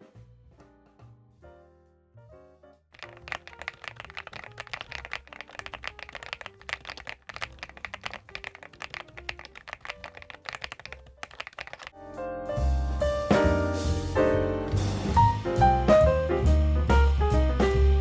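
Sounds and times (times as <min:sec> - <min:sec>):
mechanical keyboard typing: 0:03.0 - 0:11.9
piano and bass music: 0:12.2 - 0:18.0.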